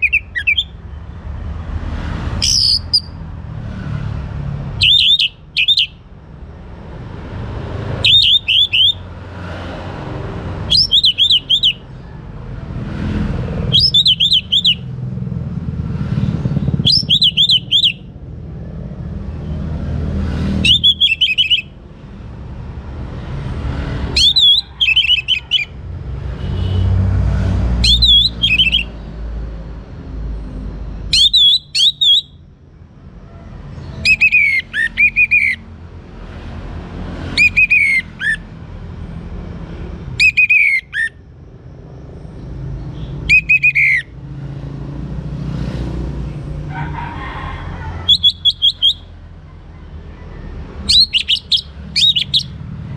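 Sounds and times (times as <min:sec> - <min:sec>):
thrush singing warbling phrases: 0:00.0 - 0:00.7, 0:04.7 - 0:06.0, 0:08.0 - 0:09.0, 0:10.6 - 0:11.8, 0:13.7 - 0:14.8, 0:16.9 - 0:18.1, 0:20.6 - 0:21.7, 0:24.1 - 0:25.7, 0:27.8 - 0:28.9, 0:31.1 - 0:32.4, 0:34.0 - 0:35.6, 0:37.4 - 0:38.4, 0:48.0 - 0:49.1, 0:50.9 - 0:52.6.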